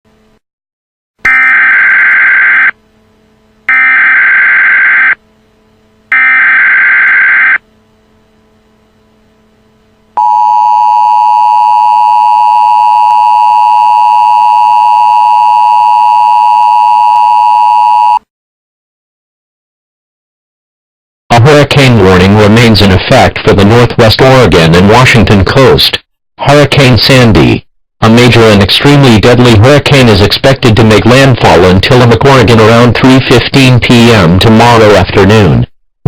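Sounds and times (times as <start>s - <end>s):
faint hum and static hiss: 0.1s - 0.4s, 1.9s - 18.2s
two-tone attention signal: 10.2s - 18.2s.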